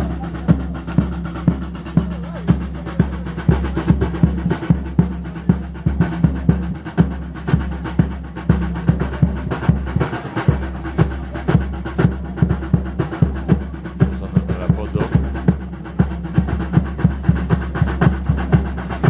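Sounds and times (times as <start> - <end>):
drums beating steady rhythm: 0.0 - 19.0.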